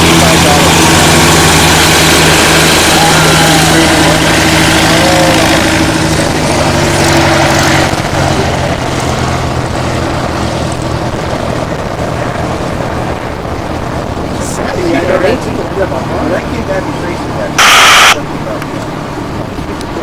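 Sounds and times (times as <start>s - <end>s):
engine running: 0.0s - 20.0s
loud rushing noise: 17.6s - 18.2s.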